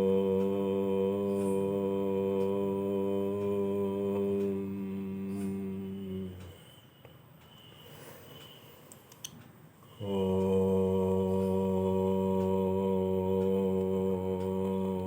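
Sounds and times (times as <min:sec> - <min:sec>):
low voice chanting: 0:00.0 - 0:06.8, 0:09.9 - 0:15.0.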